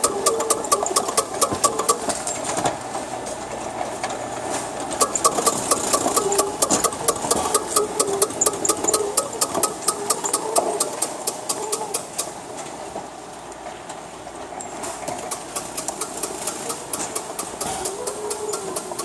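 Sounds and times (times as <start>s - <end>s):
seeding machine clicking rapidly: 0.0s - 2.8s, 4.9s - 12.5s, 15.1s - 19.0s.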